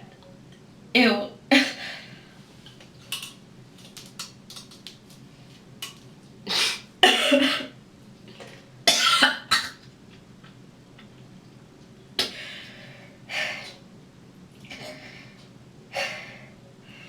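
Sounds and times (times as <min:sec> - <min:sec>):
woman coughing and gagging: 0:01.5 - 0:02.0, 0:06.5 - 0:07.8, 0:08.9 - 0:09.8.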